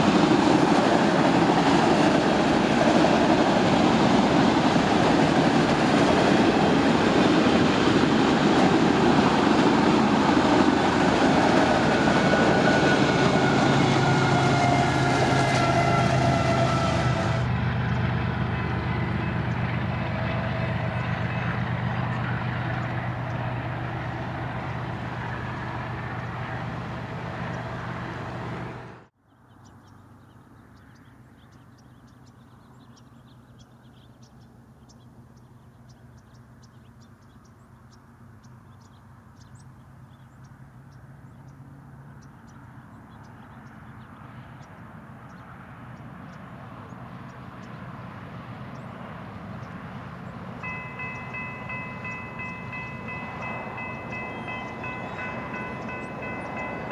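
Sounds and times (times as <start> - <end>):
train rolling on steel rails: 0.0 - 29.1, 46.0 - 56.9.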